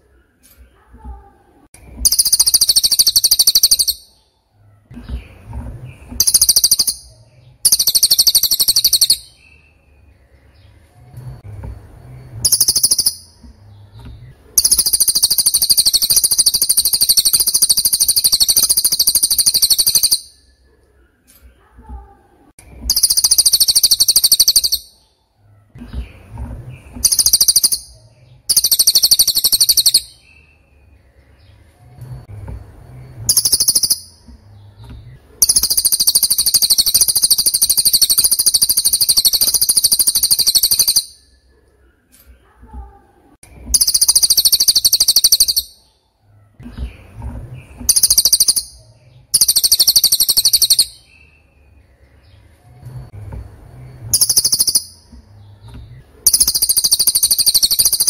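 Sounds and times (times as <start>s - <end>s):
bird trilling: 1.9s - 4.2s, 6.1s - 9.7s, 12.4s - 13.5s, 14.5s - 20.6s, 22.8s - 25.1s, 26.9s - 30.8s, 33.2s - 34.3s, 35.1s - 41.4s, 43.7s - 45.9s, 47.8s - 51.4s, 54.1s - 55.2s, 56.2s - 58.0s.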